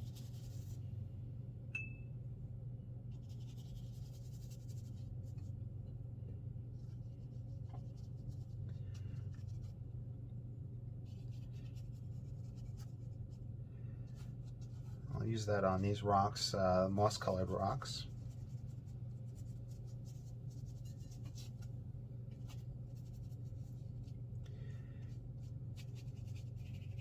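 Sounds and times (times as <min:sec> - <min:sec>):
brush brushing across paper: 0:00.0 - 0:00.8, 0:03.1 - 0:05.5, 0:06.8 - 0:09.8, 0:11.0 - 0:13.4, 0:14.0 - 0:27.0
steady low hum: 0:00.0 - 0:27.0
short click with high ping: 0:01.8 - 0:02.1.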